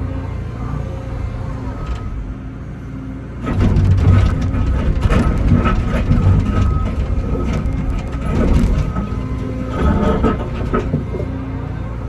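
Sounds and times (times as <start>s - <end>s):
excavator engine running: 0.6s - 12.0s
loud clanking and knocking: 3.4s - 11.8s.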